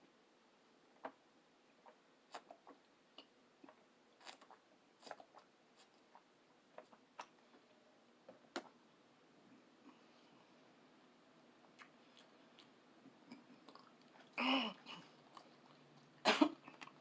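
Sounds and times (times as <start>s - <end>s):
person chewing food: 1.8s - 7.7s, 11.6s - 17.0s.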